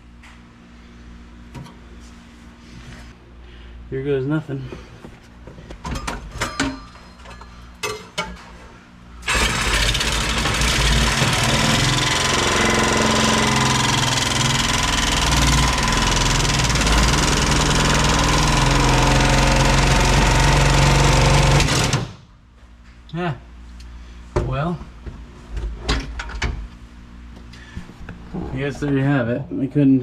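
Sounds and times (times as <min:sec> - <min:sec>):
handheld power tool running: 0:09.2 - 0:22.2.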